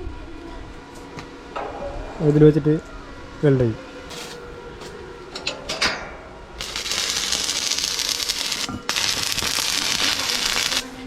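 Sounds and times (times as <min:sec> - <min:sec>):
arc welding crackle: 0:06.6 - 0:11.0.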